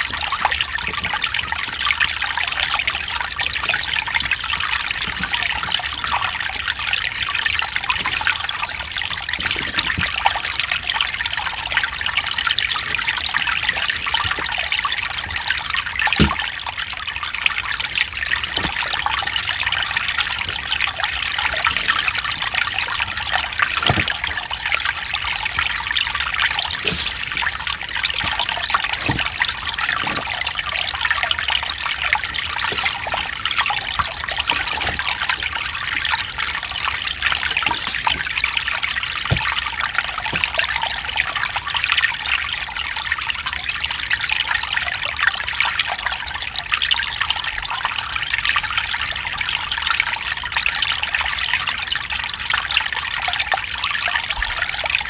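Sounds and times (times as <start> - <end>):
stream babbling over rocks: 0.0 - 41.6
deeper water plop: 17.8 - 40.8.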